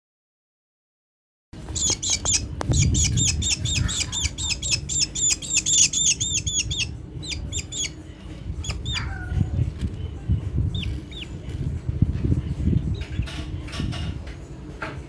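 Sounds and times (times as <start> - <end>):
baby bird chirping: 1.6 - 11.6, 12.8 - 14.0.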